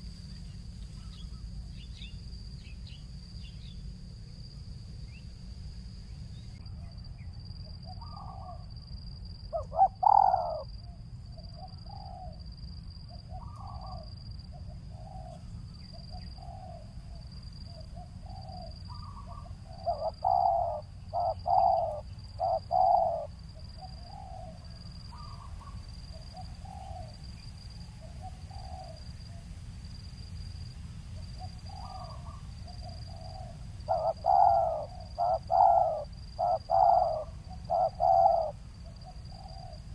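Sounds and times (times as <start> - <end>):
dove cooing: 7.8 - 8.7, 9.5 - 12.4, 13.1 - 27.2, 28.0 - 29.0, 31.2 - 39.9.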